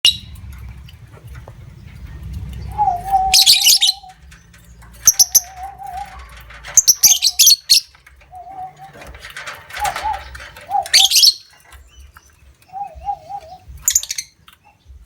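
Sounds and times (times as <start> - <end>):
lovebirds chattering shrilly: 1.6 - 14.9
low warbling whistle: 2.7 - 4.1.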